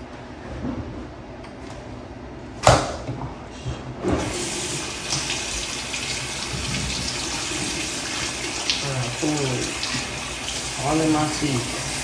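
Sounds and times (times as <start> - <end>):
water running into a sink: 4.2 - 12.0.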